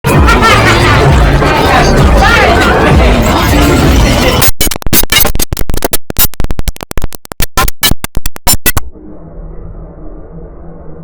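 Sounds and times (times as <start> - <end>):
stuttering chopped computer sound: 3.8 - 8.9.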